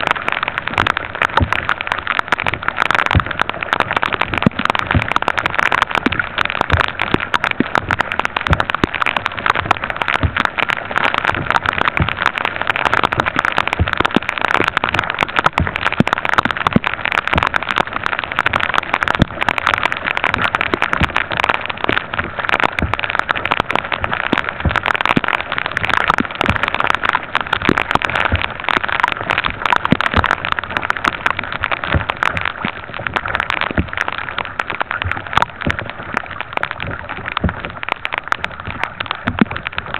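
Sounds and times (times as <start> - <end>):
rain falling on kayak and water: 0.0 - 39.9.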